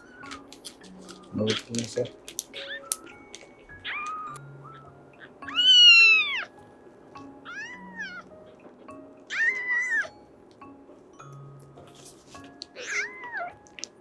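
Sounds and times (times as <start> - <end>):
kitten meowing: 0.0 - 0.5, 2.5 - 3.0, 3.8 - 6.5, 7.4 - 8.3, 9.3 - 10.1, 12.7 - 13.9
faint background music: 0.0 - 14.0.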